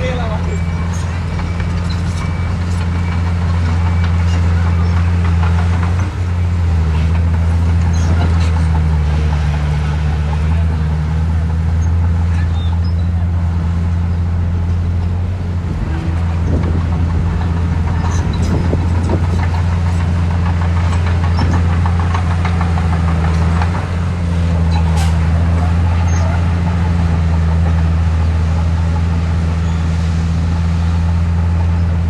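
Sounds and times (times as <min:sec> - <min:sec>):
heavy diesel engine running: 0:00.0 - 0:32.0
machine clatter and rattling: 0:16.2 - 0:28.2.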